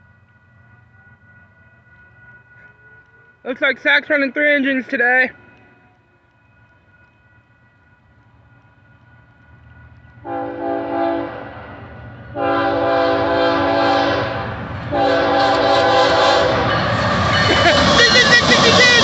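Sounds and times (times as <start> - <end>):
low rumble of locomotives: 0.0 - 19.0
locomotive air horn blasts: 10.2 - 11.6, 12.4 - 17.5.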